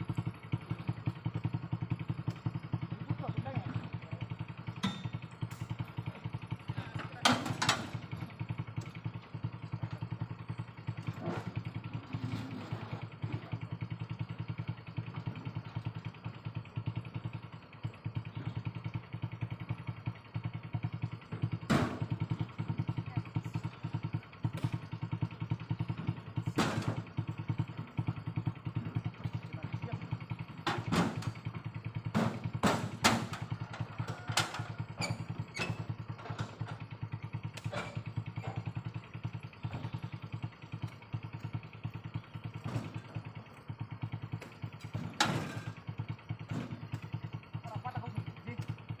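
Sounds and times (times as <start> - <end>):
small engine running: 0.0 - 49.0
sharp knocks and clatter: 21.4 - 22.4, 25.9 - 27.2, 30.6 - 31.4, 32.1 - 36.9, 42.5 - 43.2, 44.4 - 47.1.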